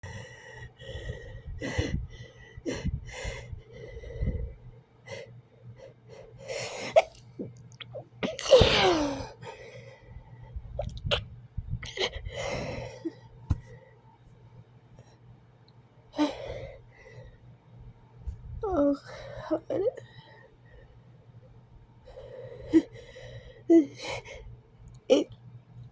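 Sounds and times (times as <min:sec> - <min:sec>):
person sneezing: 0:08.2 - 0:09.4.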